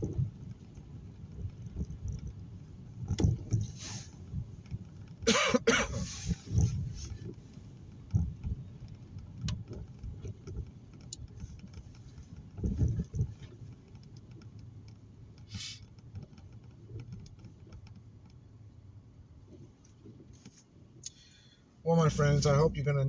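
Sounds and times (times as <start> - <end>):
car cabin rumble: 0.0 - 23.0
dull thumps and knocks: 3.0 - 3.8, 9.4 - 13.5
short hiss: 15.5 - 15.8.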